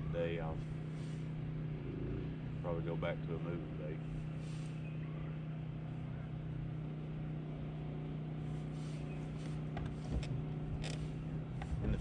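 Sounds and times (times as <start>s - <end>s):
boat motor humming: 0.0s - 12.0s.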